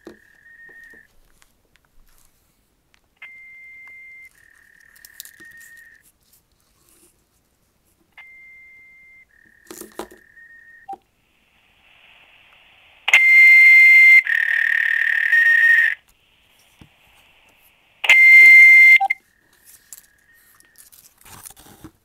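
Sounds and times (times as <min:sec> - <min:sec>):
faint clicks and crackle: 0:00.0 - 0:07.2
two-tone electronic beep: 0:03.2 - 0:04.3, 0:08.2 - 0:09.3, 0:13.1 - 0:16.0, 0:18.0 - 0:19.2.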